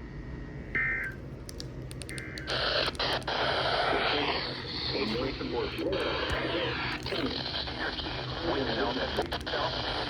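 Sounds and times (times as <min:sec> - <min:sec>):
radio static with crackles: 0:02.4 - 0:10.0.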